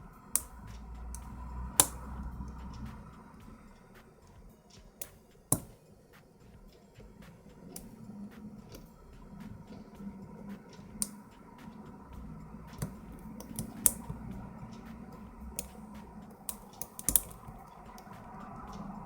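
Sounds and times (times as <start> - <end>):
lock pick clicking on pins: 0.3 - 2.6, 4.8 - 5.8, 12.7 - 18.8.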